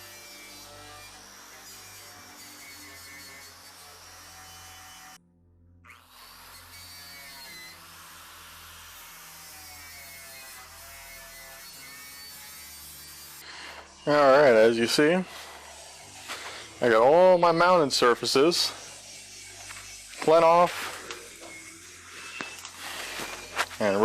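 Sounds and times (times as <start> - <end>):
wire wheel power tool stripping paint: 5.9 - 13.9, 18.5 - 24.0.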